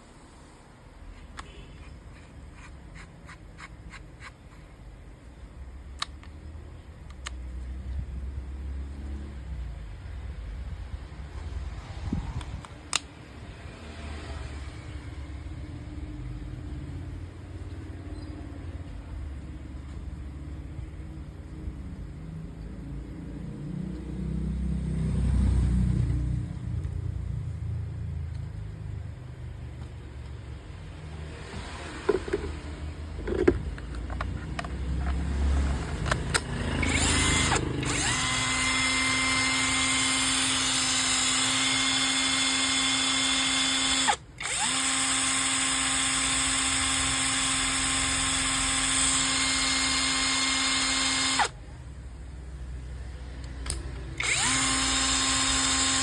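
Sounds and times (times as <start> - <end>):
cordless drill whining: 36.8 - 51.6, 54.2 - 56.0.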